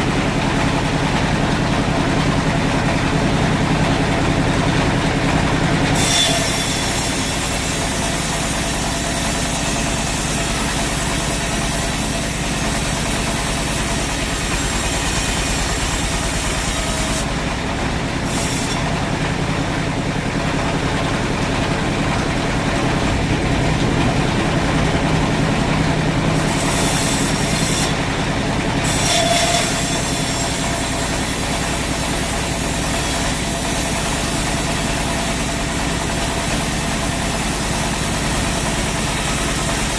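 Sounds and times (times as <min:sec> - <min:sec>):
bright hiss of sawmill machinery: 0:06.0 - 0:17.4, 0:18.2 - 0:19.0, 0:26.4 - 0:28.0, 0:28.8 - 0:39.9
low motor hum: 0:10.9 - 0:28.9.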